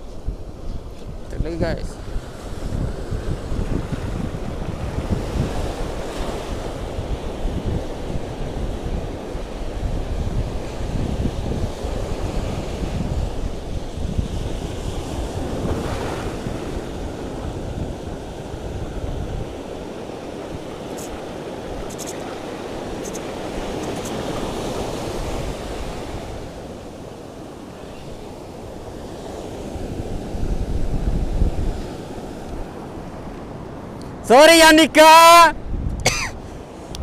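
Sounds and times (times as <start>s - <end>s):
wind buffeting microphone: 0.0s - 34.2s, 35.5s - 37.0s
surf washing on shore: 0.0s - 37.0s.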